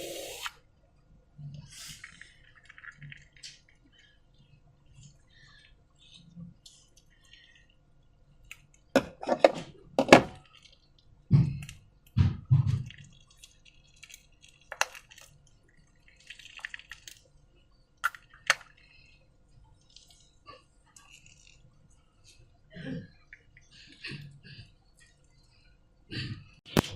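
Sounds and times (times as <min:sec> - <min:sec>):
wet slime squelches: 0:10.4 - 0:25.7.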